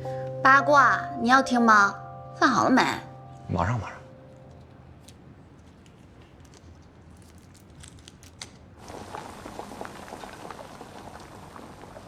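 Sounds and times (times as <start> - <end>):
food sizzling in pan: 8.8 - 12.0.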